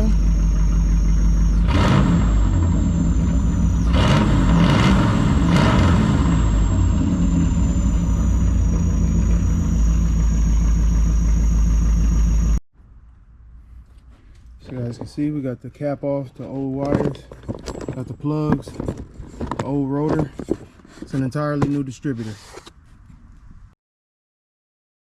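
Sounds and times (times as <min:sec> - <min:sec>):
car engine idling and revving: 0:00.0 - 0:12.6.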